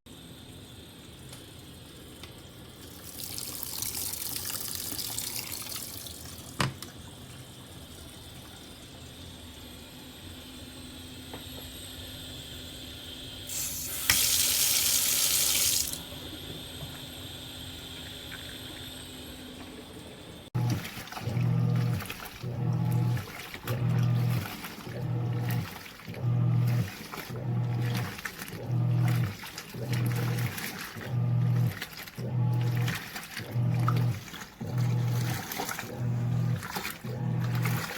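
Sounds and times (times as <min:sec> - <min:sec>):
water gushing into sink: 0:02.7 - 0:06.6, 0:13.5 - 0:16.1, 0:20.6 - 0:37.9.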